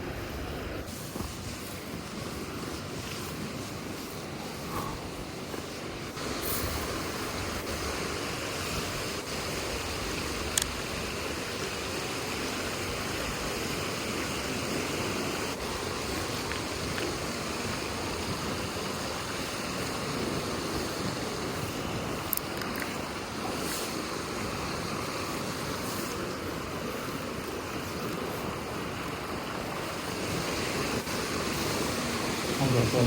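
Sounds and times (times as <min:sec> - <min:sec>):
river water rushing: 0:00.0 - 0:33.0
sharp clicks: 0:10.5 - 0:10.8.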